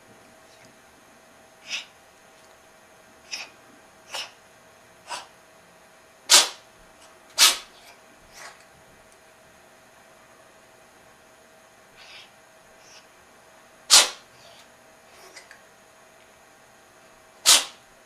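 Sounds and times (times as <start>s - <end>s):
cat sneezing: 1.6s - 1.9s, 3.2s - 3.5s, 4.1s - 4.4s, 5.1s - 5.3s, 6.3s - 6.6s, 7.4s - 8.6s, 13.9s - 14.6s, 17.4s - 17.8s.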